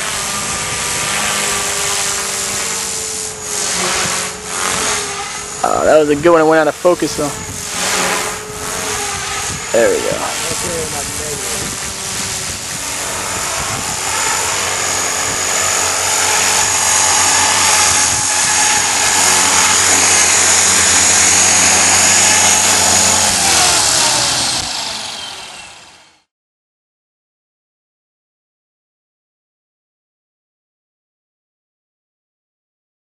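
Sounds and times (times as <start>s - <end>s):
rc helicopter engine buzzing: 0.0s - 26.3s.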